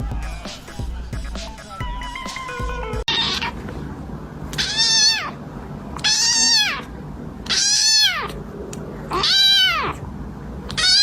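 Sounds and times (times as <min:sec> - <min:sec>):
cat meowing: 0:02.6 - 0:03.6, 0:04.6 - 0:05.4, 0:06.0 - 0:08.4, 0:09.1 - 0:10.0, 0:10.7 - 0:11.0.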